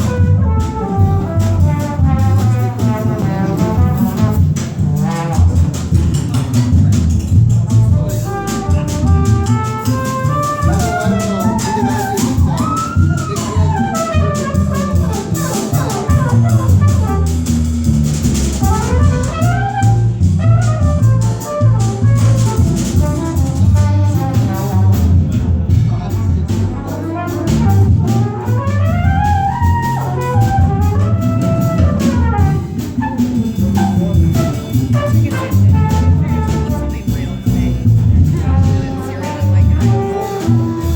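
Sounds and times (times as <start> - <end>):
bass: 0.0 - 40.9
drums: 0.0 - 40.9
jazz group playing: 0.0 - 40.9.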